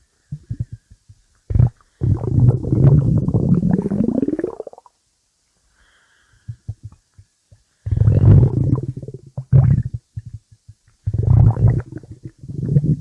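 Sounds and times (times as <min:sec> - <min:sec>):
stomach growling: 0:00.4 - 0:04.9, 0:07.9 - 0:13.0.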